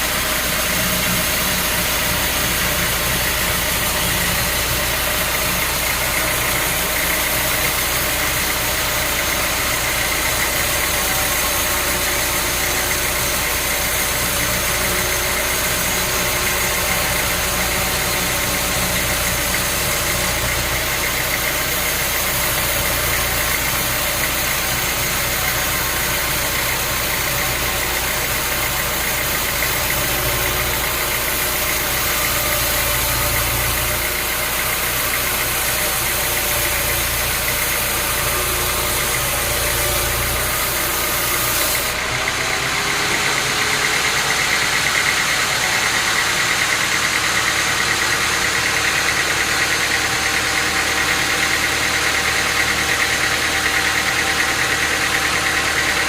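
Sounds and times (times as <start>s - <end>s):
high steady whine: 0.0s - 42.0s
sawmill machinery humming: 0.0s - 56.0s.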